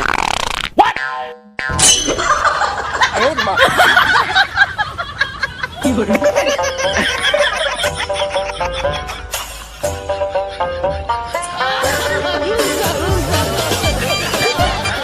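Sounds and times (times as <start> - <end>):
people laughing and snickering: 2.2 - 15.0
background music with steady notes: 5.9 - 15.0.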